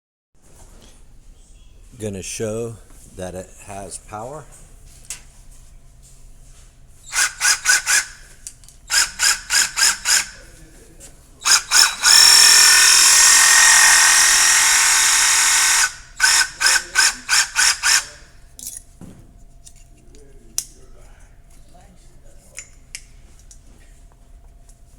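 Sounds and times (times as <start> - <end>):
reciprocating saw motor running: 7.1 - 8.3, 8.9 - 10.5, 11.4 - 18.3.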